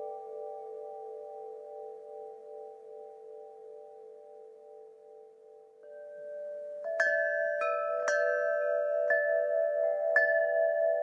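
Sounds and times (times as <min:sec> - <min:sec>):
wind chimes ringing: 0:05.8 - 0:11.0.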